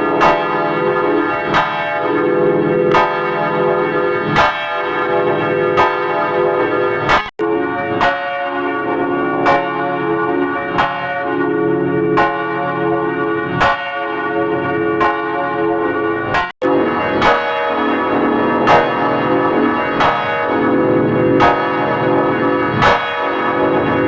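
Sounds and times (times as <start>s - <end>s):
church bells ringing: 0.0s - 24.0s.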